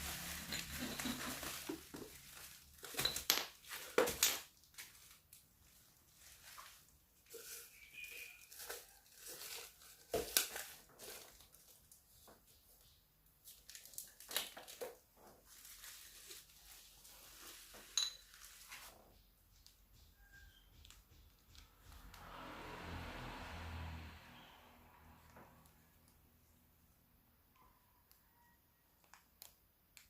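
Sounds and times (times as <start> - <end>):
plastic packaging crinkling: 0.0 - 5.5, 6.1 - 12.0, 13.4 - 18.9.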